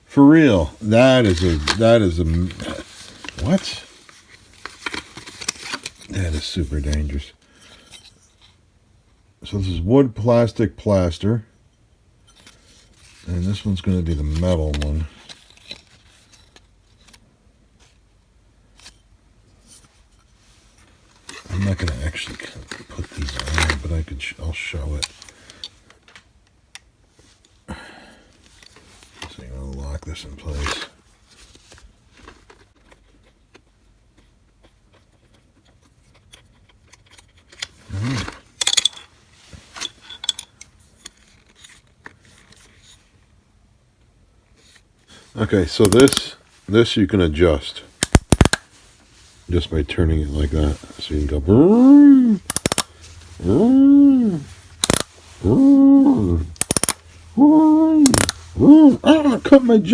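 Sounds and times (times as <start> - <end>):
plastic and metal tool parts clicking: 35.2 - 39.1, 45.8 - 46.4, 48.0 - 48.7, 52.4 - 53.5, 54.5 - 55.4, 56.5 - 57.2, 58.0 - 58.6
small objects clicking: 45.8 - 46.4, 48.0 - 48.6, 52.4 - 53.6, 54.3 - 59.6.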